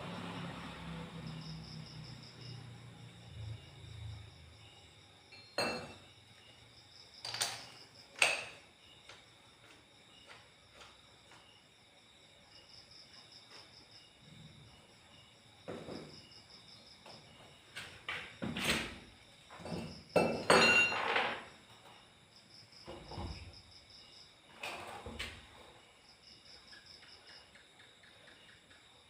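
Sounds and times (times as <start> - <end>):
crickets chirping: 0.0 - 29.0
hard objects knocking and clattering: 19.5 - 21.5.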